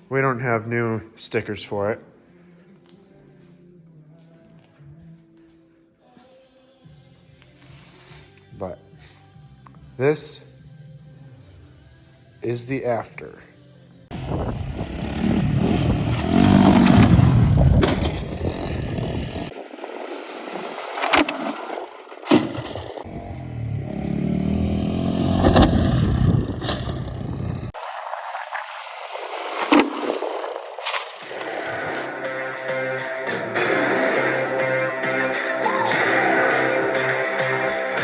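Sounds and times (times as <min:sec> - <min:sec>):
background music song: 0:00.0 - 0:14.2, 0:31.3 - 0:38.0
quad bike engine revving: 0:14.1 - 0:20.2, 0:21.1 - 0:27.8, 0:30.1 - 0:32.3.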